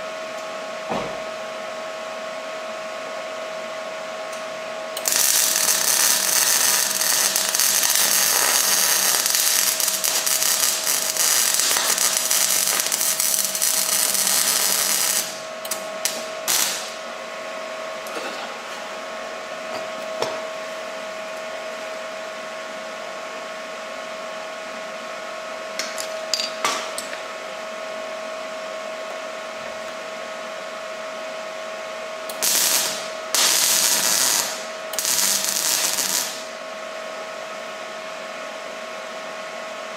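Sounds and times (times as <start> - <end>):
steady hum: 0.0 - 38.8
welding arc crackling hiss: 5.0 - 17.0, 32.3 - 36.6.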